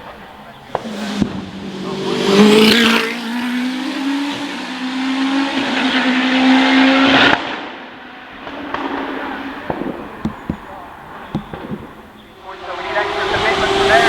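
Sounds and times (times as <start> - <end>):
racing car engine at high revs: 0.5 - 14.0.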